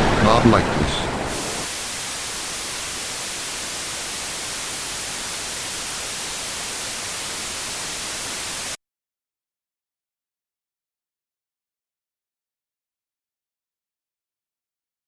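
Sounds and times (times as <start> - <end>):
white noise static hiss: 0.5 - 8.8.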